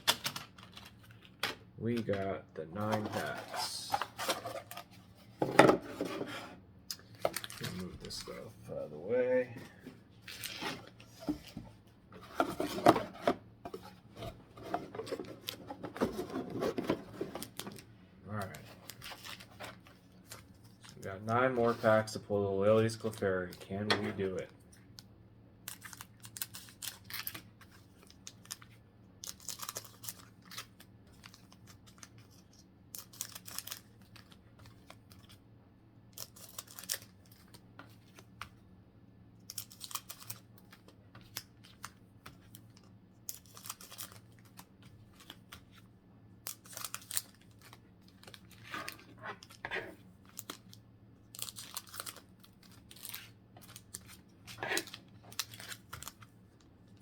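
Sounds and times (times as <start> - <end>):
foil wrapper crinkling and tearing: 25.6 - 35.4, 36.1 - 38.3, 39.4 - 56.3.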